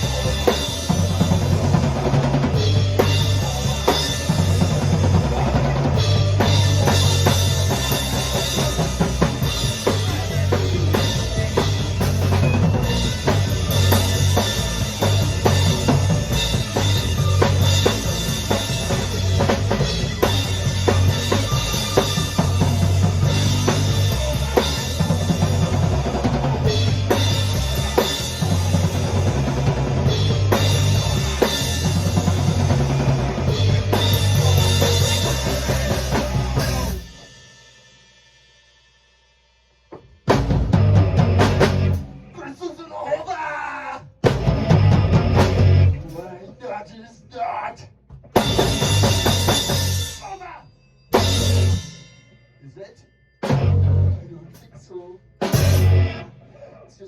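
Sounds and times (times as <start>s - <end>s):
band playing: 0.0s - 37.3s, 40.3s - 42.5s, 44.2s - 46.3s, 48.4s - 50.5s, 51.1s - 52.0s, 53.4s - 54.5s, 55.4s - 56.4s
bass: 0.0s - 38.8s, 39.9s - 57.0s.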